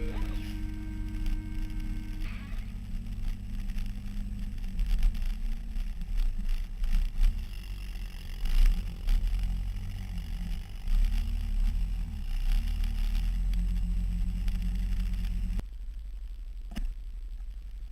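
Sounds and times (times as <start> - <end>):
utility vehicle engine running: 0.0 - 15.6.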